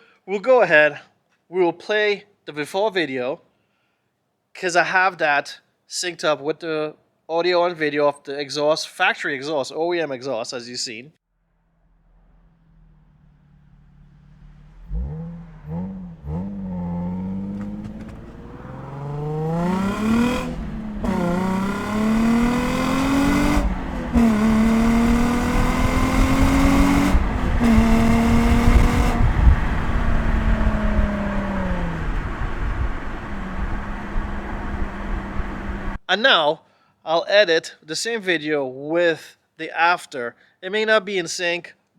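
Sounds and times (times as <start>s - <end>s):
car engine revving: 11.5s - 36.0s
car accelerating through gears: 12.5s - 36.0s.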